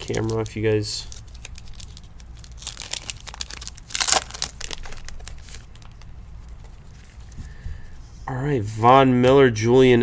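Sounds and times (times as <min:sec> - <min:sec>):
foil wrapper crinkling and tearing: 0:00.0 - 0:06.1.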